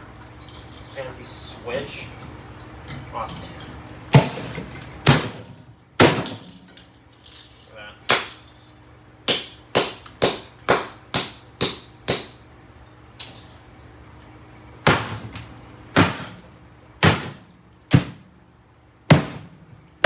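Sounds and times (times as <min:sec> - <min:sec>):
strikes smashing a mini fridge: 0:04.1 - 0:06.6, 0:14.9 - 0:18.3.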